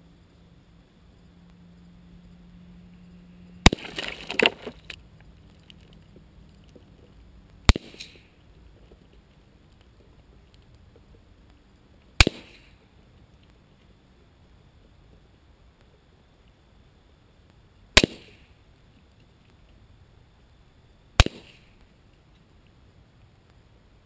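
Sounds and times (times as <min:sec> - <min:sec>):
gunshots hitting metal can: 0:03.6 - 0:04.1, 0:07.7 - 0:08.2, 0:12.2 - 0:12.7, 0:18.0 - 0:18.4, 0:21.2 - 0:21.7.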